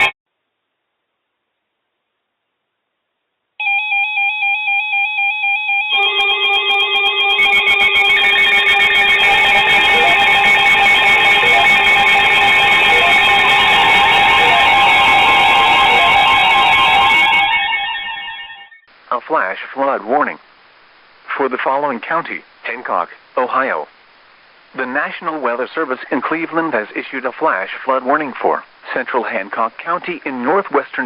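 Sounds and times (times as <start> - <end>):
weather radio alarms beeping: 4.5 - 18.7.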